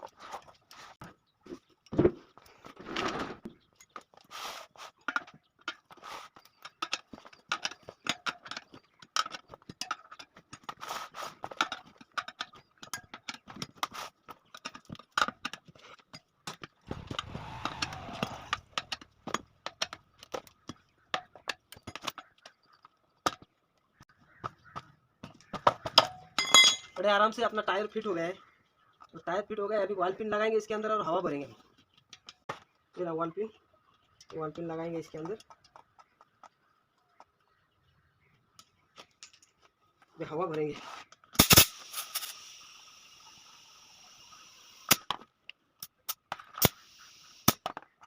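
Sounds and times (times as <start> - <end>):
rough scraping: 2.6 - 3.5, 16.9 - 19.4.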